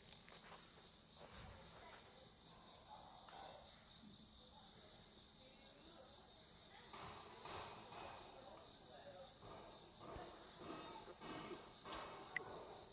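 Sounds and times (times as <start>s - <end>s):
insects trilling: 0.0s - 12.9s.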